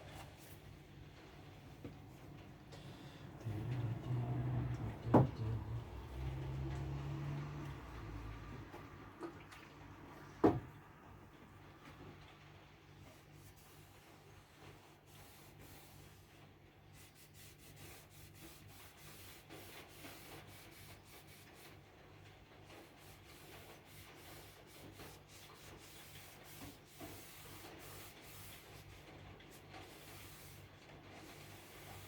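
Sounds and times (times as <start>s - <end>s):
hand rubbing wooden cabinet: 3.4s - 7.0s, 23.4s - 28.9s.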